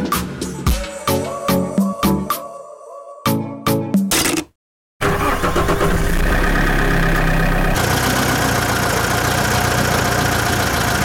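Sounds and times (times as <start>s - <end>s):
tractor engine idling: 5.0s - 11.0s.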